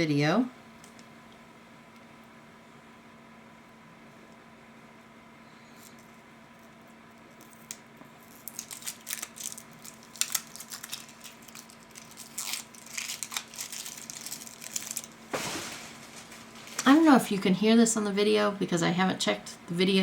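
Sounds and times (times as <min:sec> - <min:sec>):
faint steady hum: 0:00.0 - 0:20.0
packaging crinkling and tearing: 0:07.3 - 0:17.3.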